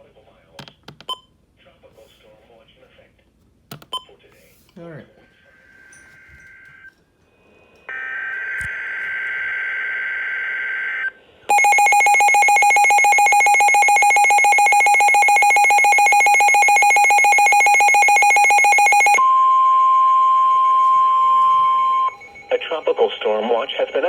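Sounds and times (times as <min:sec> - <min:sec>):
steady single-pitch attention tone: 0:11.5 - 0:23.7.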